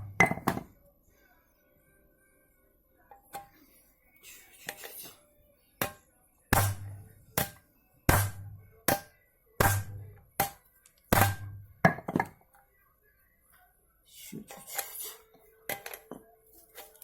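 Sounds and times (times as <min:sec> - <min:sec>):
hammer striking metal: 0:05.8 - 0:12.0.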